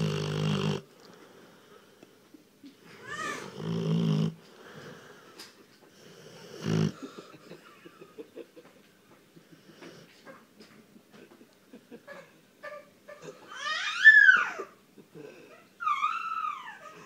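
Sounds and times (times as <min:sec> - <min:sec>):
dog snoring loudly: 0:00.0 - 0:00.9, 0:03.4 - 0:05.2, 0:06.0 - 0:07.0.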